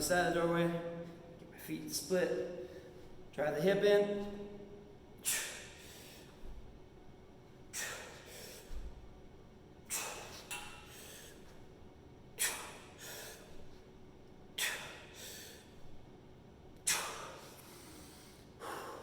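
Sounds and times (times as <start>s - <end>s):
man breathing forcefully: 5.2s - 6.7s, 7.6s - 9.1s, 9.8s - 11.6s, 12.3s - 13.8s, 14.5s - 16.0s, 16.8s - 19.0s.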